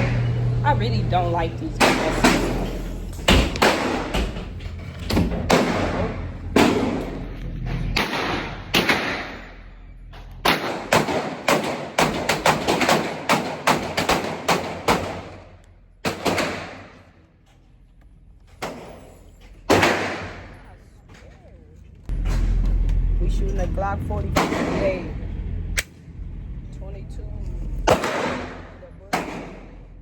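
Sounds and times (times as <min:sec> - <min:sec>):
gunshots echoing indoors: 0:01.7 - 0:04.5, 0:05.1 - 0:07.3, 0:07.9 - 0:09.8, 0:10.4 - 0:17.3, 0:19.7 - 0:20.8, 0:24.3 - 0:25.1, 0:27.8 - 0:30.0.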